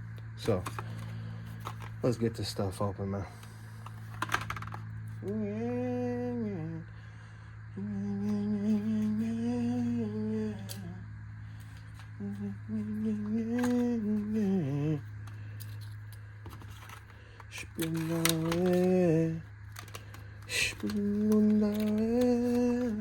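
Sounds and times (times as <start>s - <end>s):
man humming: 5.2s - 6.9s, 7.7s - 11.1s, 12.2s - 15.1s, 17.5s - 19.5s, 20.5s - 23.0s.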